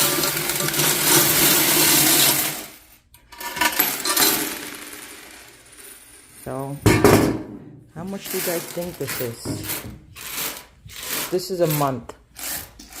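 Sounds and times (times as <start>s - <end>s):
coins clinking and rattling: 0.0s - 6.8s, 8.1s - 12.8s.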